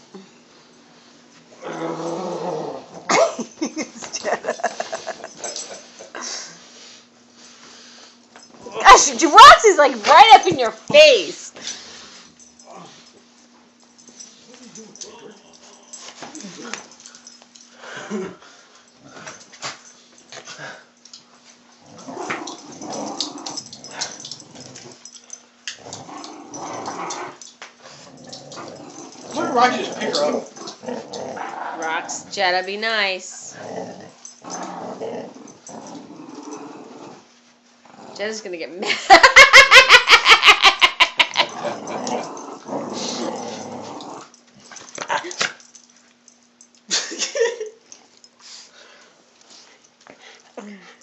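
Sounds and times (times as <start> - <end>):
dogs growling in play: 1.4 - 3.4, 11.6 - 21.0, 21.7 - 32.7, 33.4 - 38.4, 40.8 - 46.3.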